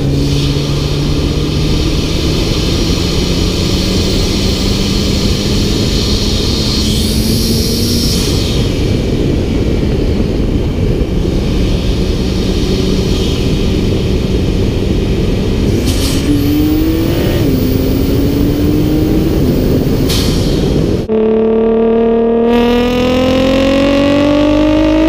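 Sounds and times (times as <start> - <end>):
car engine accelerating: 0.0 - 9.7, 10.4 - 25.0
heavy rushing noise: 0.0 - 25.0.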